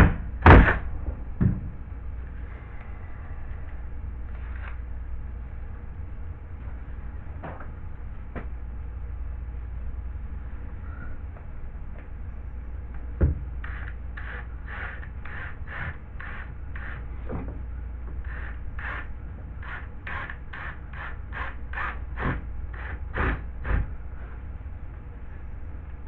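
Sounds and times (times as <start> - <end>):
low steady hum: 0.0 - 26.0
scraping strokes on drywall: 13.6 - 17.4, 18.2 - 24.3.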